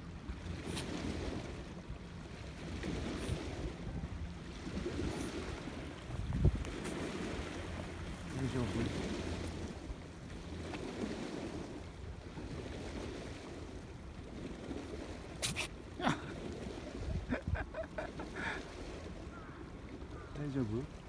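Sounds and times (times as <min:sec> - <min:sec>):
cat sneezing: 0:15.4 - 0:16.3.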